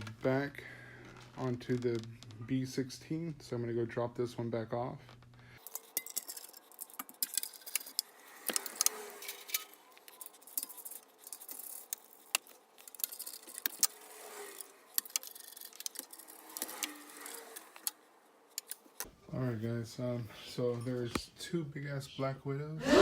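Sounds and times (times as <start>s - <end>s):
metallic clinks and rattles: 5.6s - 17.9s.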